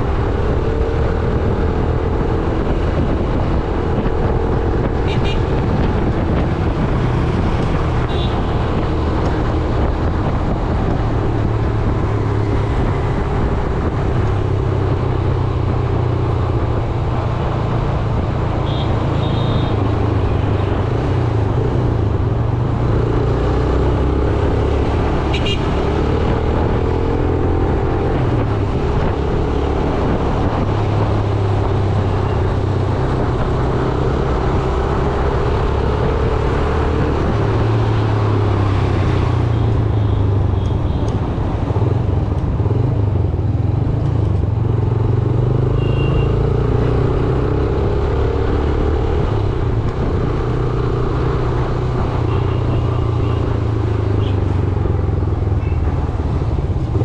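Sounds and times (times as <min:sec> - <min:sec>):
road traffic hum: 0:00.0 - 0:57.0.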